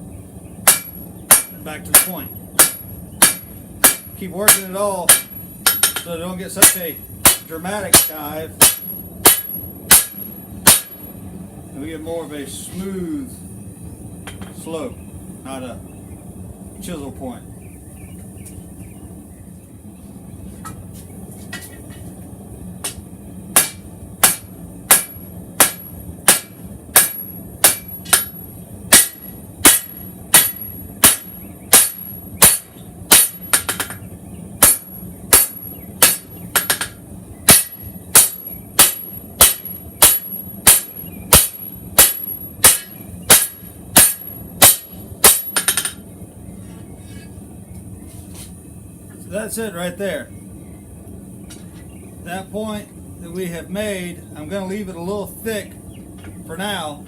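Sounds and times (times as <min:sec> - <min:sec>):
hammer striking steel on anvil: 0:00.6 - 0:11.1, 0:22.8 - 0:34.0, 0:34.6 - 0:46.0.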